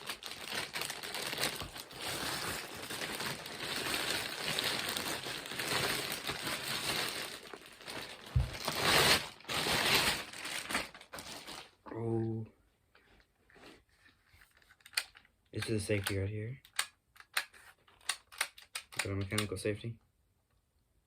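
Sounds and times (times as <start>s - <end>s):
packaging rustling and crinkling: 0.0s - 11.8s.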